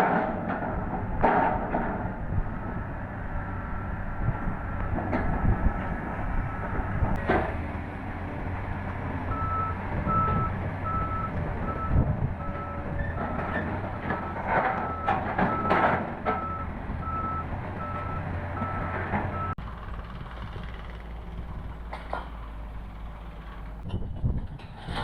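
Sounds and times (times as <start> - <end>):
construction machinery engine rumble: 0.0 - 25.0
reversing alarm beeping: 9.3 - 12.8, 14.2 - 19.6.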